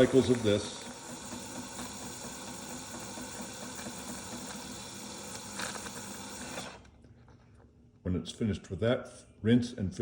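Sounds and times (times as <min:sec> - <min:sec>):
espresso machine pump hum: 0:00.0 - 0:06.9.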